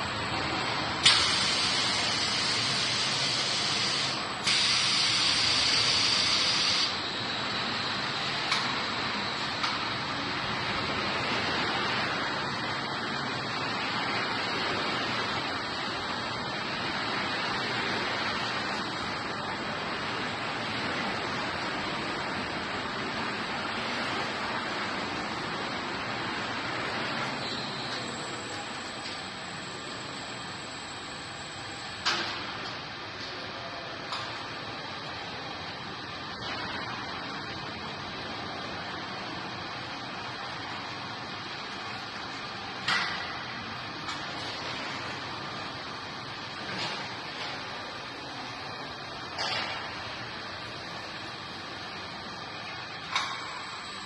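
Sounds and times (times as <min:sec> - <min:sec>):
wrapping machine running: 0:00.0 - 0:27.4
long machine hisses: 0:01.0 - 0:07.2.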